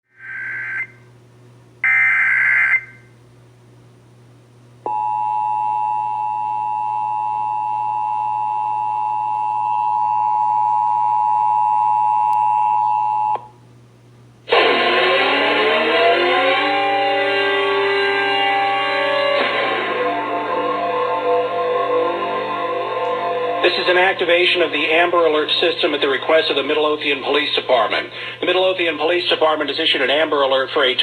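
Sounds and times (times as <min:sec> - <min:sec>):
two-tone attention signal: 0:00.2 - 0:01.0
low hum: 0:04.0 - 0:29.0.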